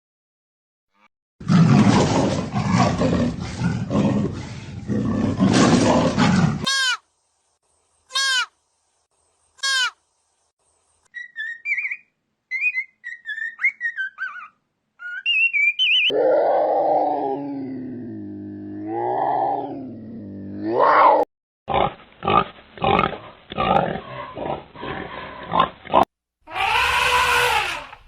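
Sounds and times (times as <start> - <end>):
animal roaring: 1.4 - 6.7, 16.1 - 21.2, 22.9 - 28.0.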